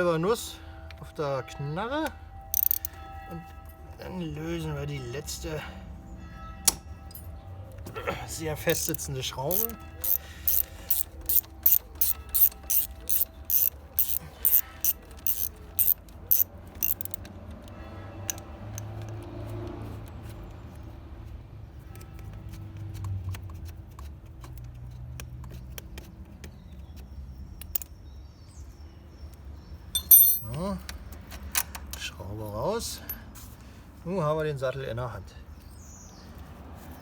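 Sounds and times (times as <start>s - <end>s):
ratchet clicking: 2.6s - 3.0s, 8.7s - 17.3s
tool handling: 2.6s - 3.0s, 8.7s - 17.3s, 30.0s - 30.6s.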